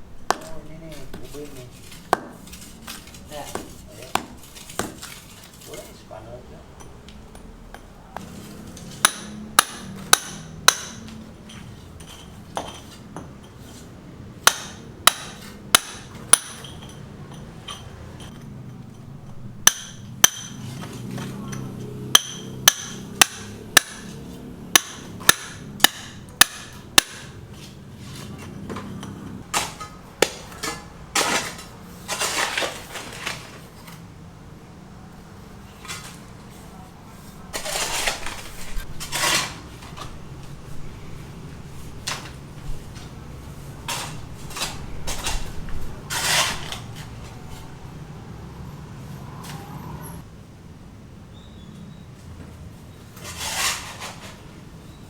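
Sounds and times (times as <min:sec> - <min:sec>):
clattering and scraping: 0:00.0 - 0:06.1, 0:07.3 - 0:34.1, 0:35.6 - 0:47.9, 0:52.4 - 0:54.8
ringing hammer blows: 0:19.6 - 0:20.7, 0:21.5 - 0:27.2.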